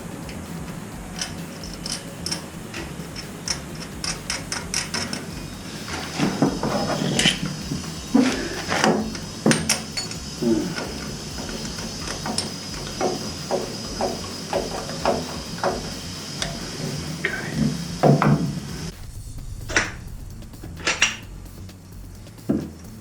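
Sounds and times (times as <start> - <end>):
tools clinking on steel pipe: 8.2 - 15.8.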